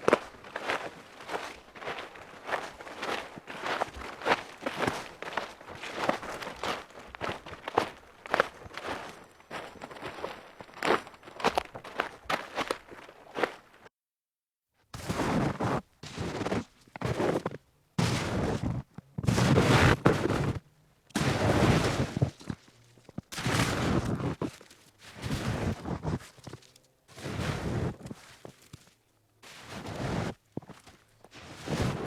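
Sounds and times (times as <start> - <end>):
footsteps crunching in snow: 0.0 - 13.9, 15.0 - 20.6, 21.2 - 32.0.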